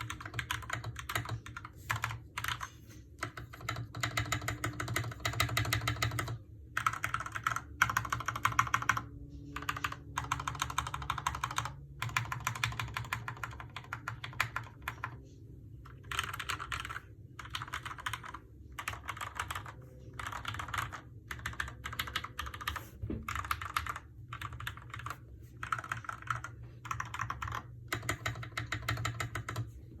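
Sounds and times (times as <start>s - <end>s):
mechanical keyboard typing: 0.0s - 29.8s.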